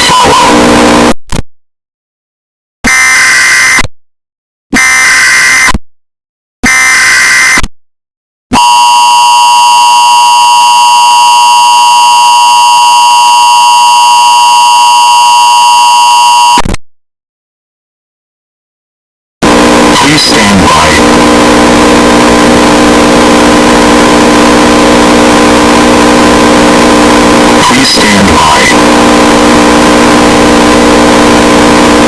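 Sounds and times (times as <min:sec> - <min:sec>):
data header bursts: 0:19.4 - 0:32.0.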